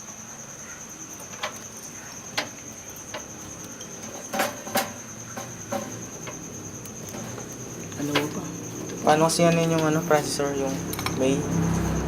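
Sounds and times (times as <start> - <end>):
cricket trill: 0.0 - 12.0
computer hardware clicks and knocks: 1.2 - 10.0.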